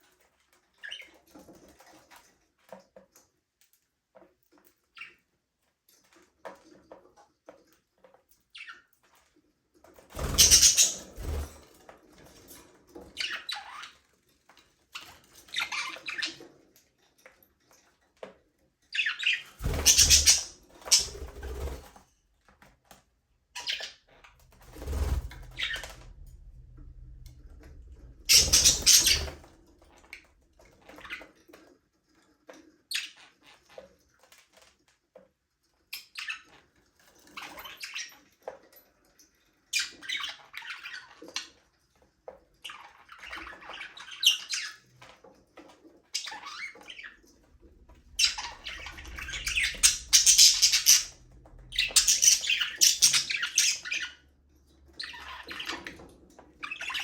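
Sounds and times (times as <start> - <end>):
wings flapping: 10.1 - 11.8, 19.5 - 22.1, 23.8 - 31.2, 47.6 - 53.8
budgerigars chirping: 10.2 - 11.1, 19.0 - 21.2, 28.3 - 29.4, 48.2 - 54.2.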